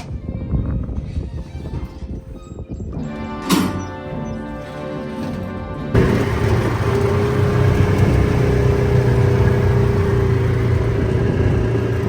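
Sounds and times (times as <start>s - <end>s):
off-road vehicle engine humming: 5.9s - 12.0s.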